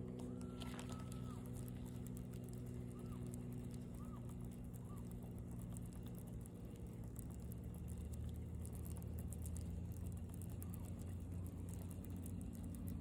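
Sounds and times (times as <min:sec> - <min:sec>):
faint low hum: 0:00.0 - 0:13.0
light fine crackle: 0:00.0 - 0:13.0.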